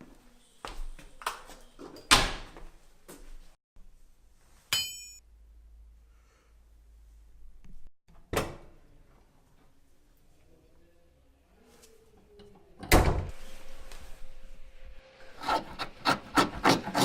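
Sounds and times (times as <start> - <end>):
sharp metallic clink: 4.7 - 5.2.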